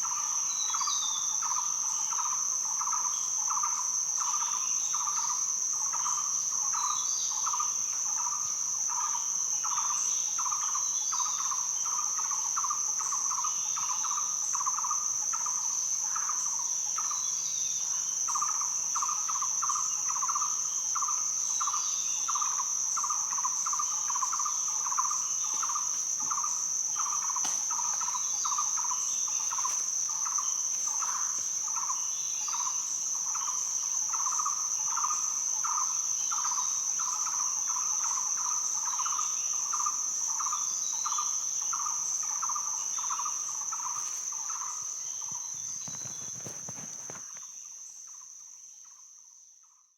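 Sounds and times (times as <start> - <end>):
high-pitched insect drone: 0.0 - 49.0
pulsing insect chirp: 0.0 - 49.9.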